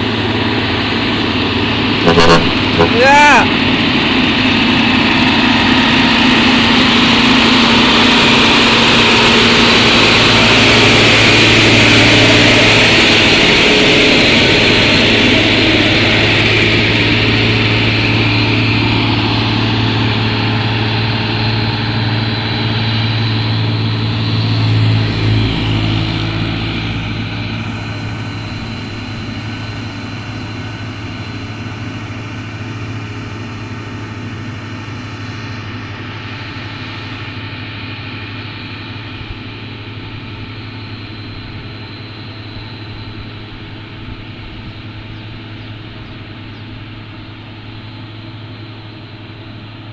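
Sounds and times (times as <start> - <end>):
truck diesel engine running: 0.0 - 49.9.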